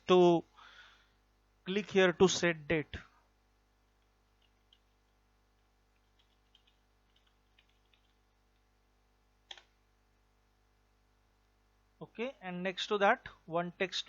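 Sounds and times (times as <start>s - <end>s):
faint keyboard typing: 3.9s - 8.7s, 9.4s - 9.8s.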